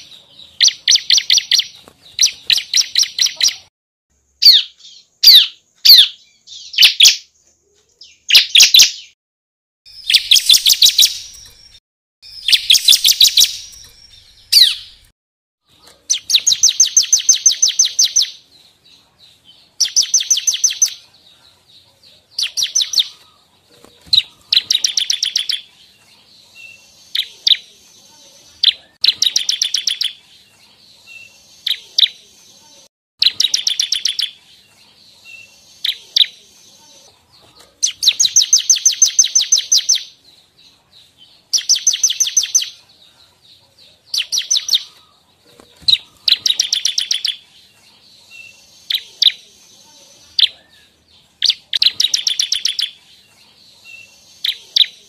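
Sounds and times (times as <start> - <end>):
bird chips: 0.0 - 3.7, 9.9 - 15.1.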